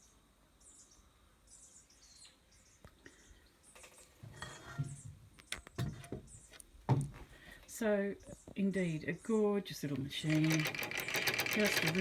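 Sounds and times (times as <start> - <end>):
birds chirping: 0.0 - 12.0
sharp clicks: 10.2 - 12.0.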